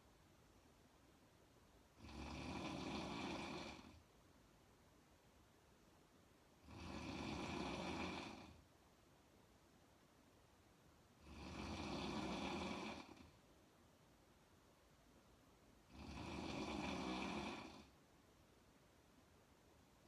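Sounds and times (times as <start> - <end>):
woman snoring: 2.0 - 4.0, 6.6 - 8.6, 11.2 - 13.4, 15.9 - 18.0.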